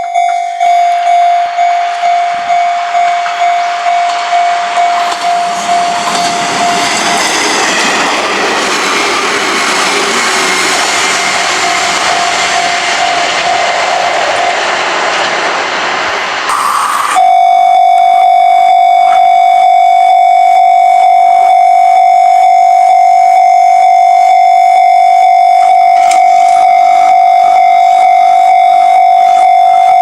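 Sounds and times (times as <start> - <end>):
level crossing warning bell: 0.0 - 15.0, 16.5 - 30.0
train rumbling past: 0.0 - 17.8.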